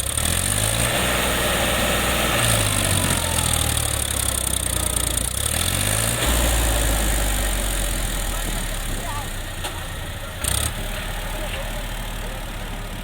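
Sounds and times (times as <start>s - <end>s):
heavy diesel engine running: 0.0s - 13.0s.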